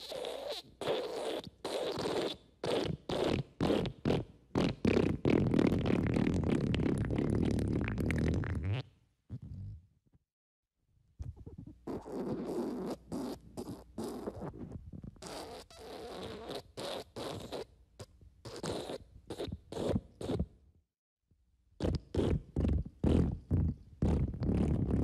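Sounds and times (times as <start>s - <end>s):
sputtering fart sound: 0.0s - 9.8s, 11.3s - 17.7s, 21.8s - 25.0s.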